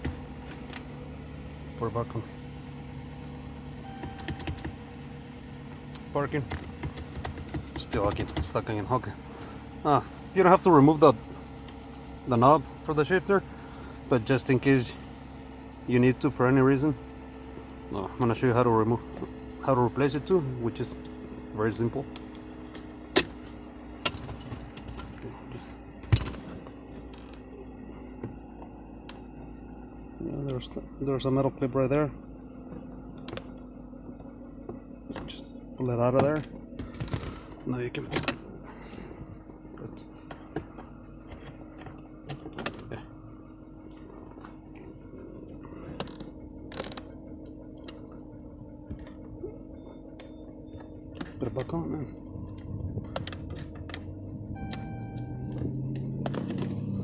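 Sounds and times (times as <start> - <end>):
gear shifter clicks and knocks: 0.0 - 1.0, 3.8 - 5.0, 5.7 - 9.1, 21.8 - 29.5, 32.6 - 38.5, 39.5 - 43.2, 43.9 - 57.0
steady low hum: 0.0 - 57.0.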